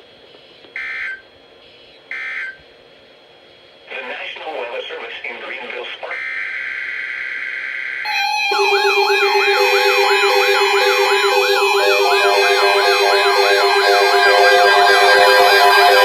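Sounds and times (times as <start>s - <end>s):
warbling siren-like alarms: 6.3s - 16.0s
on-off beeps: 8.1s - 16.0s
steady alarm tones: 8.1s - 16.0s.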